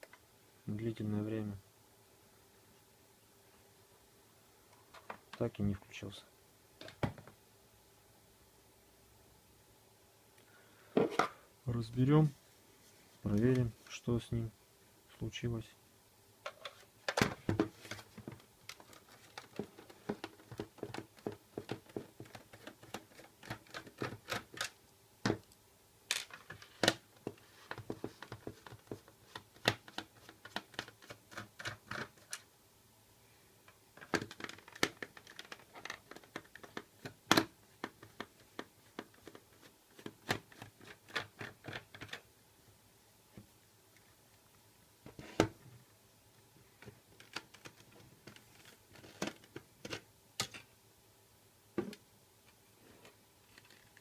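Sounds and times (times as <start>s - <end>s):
plastic clicks taps and scrapes: 16.5s - 25.5s, 34.0s - 42.2s.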